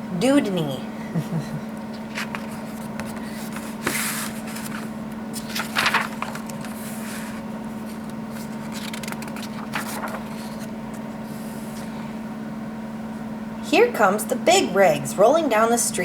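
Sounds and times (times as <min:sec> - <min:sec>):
steady low hum: 0:00.0 - 0:16.0
paper pages rustling: 0:01.9 - 0:11.9.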